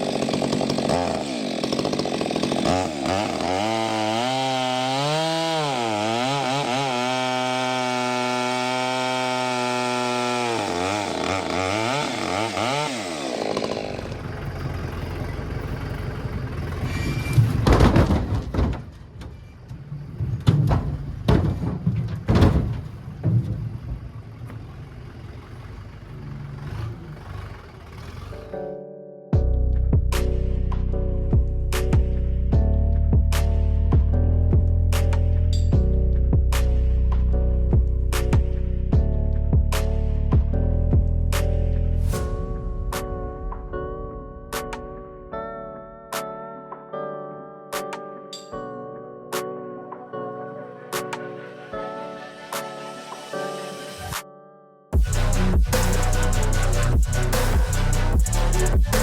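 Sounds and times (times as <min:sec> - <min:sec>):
chainsaw engine running: 0:00.0 - 0:17.2, 0:55.0 - 0:59.0.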